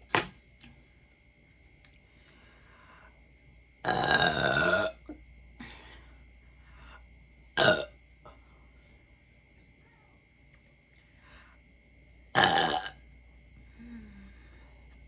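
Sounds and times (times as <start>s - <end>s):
woman belching loudly: 3.8s - 5.1s, 7.6s - 7.9s, 12.4s - 13.0s.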